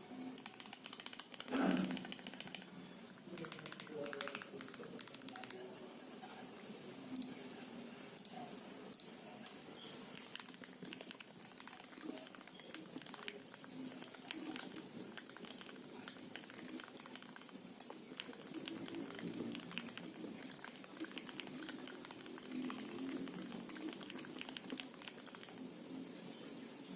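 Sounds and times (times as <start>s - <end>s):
fast typing on mechanical keyboard: 0.3s - 5.7s, 10.2s - 25.6s.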